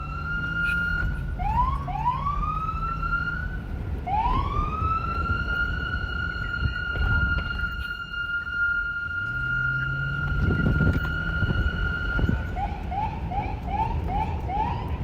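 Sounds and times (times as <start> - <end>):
police siren wailing: 0.0 - 15.0.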